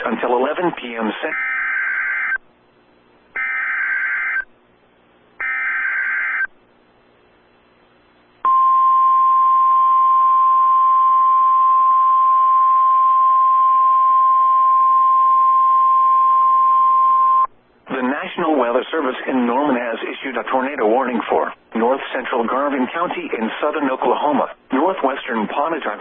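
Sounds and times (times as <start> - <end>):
faint radio hiss: 0.0 - 1.4, 6.5 - 8.5, 17.5 - 26.0
steady warning alarm tone: 1.3 - 2.4, 3.4 - 4.5, 5.4 - 6.5.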